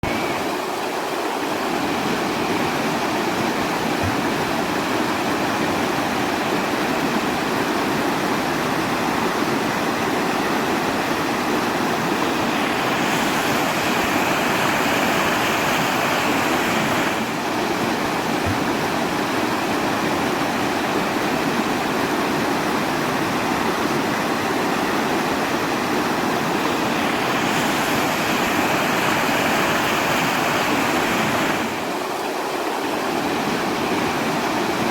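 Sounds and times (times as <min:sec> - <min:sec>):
rushing water hiss: 0:00.0 - 0:34.9.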